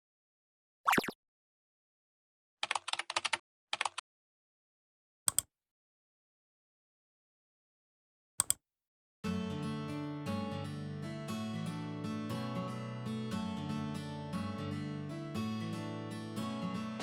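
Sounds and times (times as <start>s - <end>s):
keyboard typing clicks: 2.6s - 4.0s
acoustic guitar music: 9.2s - 17.0s.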